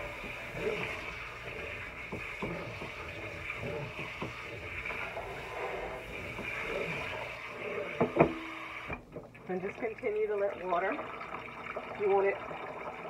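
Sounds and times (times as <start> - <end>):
tap water running into sink: 0.0 - 13.0
water splashing: 0.0 - 13.0.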